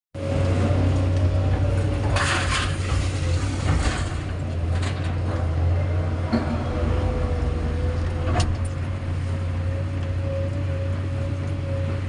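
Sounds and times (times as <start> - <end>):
diesel engine humming: 0.2 - 12.0.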